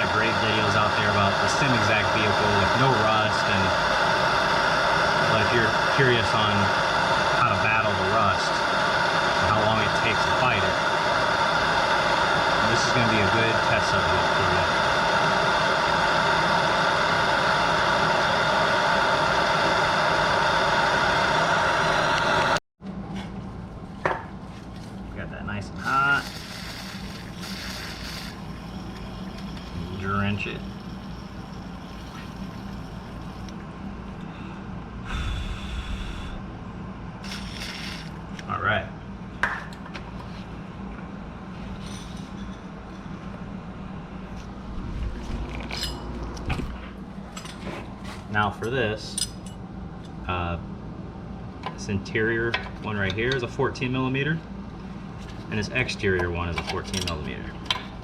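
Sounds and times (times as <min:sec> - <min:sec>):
machinery humming: 0:00.0 - 0:22.6, 0:25.2 - 0:58.0
propane torch hissing: 0:00.0 - 0:22.6, 0:25.8 - 0:36.6, 0:37.2 - 0:38.5.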